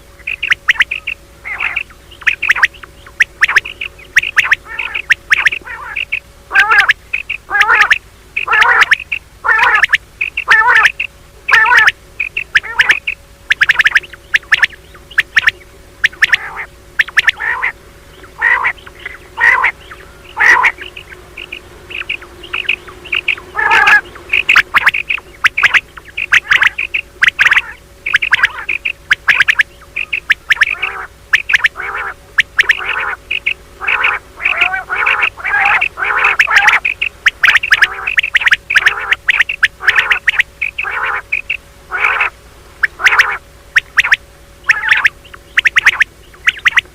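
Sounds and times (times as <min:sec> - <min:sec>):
faint steady hum: 0:00.0 - 0:46.9
quail calling: 0:00.0 - 0:46.9.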